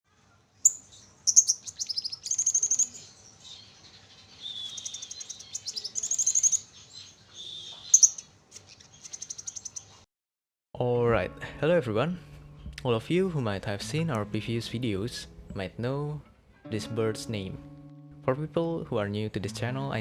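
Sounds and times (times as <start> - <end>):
finches chirping and trilling: 0.6 - 10.0.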